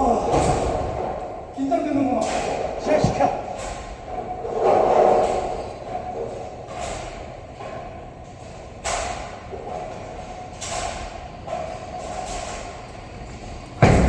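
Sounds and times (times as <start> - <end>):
bowling alley rolling rumble: 0.0 - 14.0
bowling pins crashing: 13.8 - 14.0.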